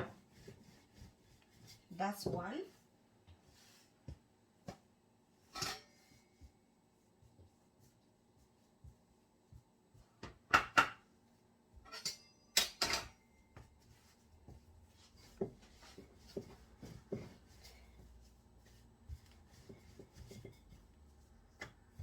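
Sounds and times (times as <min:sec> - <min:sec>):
kitchen knocks and clatters: 0:00.0 - 0:02.5, 0:10.2 - 0:11.1, 0:11.7 - 0:13.7, 0:15.2 - 0:18.1, 0:19.1 - 0:22.0
soft taps and rubbing: 0:00.0 - 0:05.0, 0:13.5 - 0:22.0.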